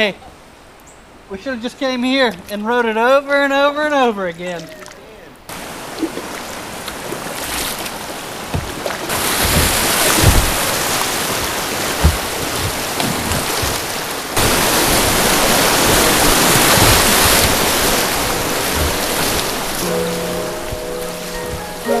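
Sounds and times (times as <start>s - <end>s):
floodwater rushing through rapids: 4.3s - 22.0s
wind buffeting microphone: 5.8s - 22.0s
low bumps: 6.0s - 22.0s.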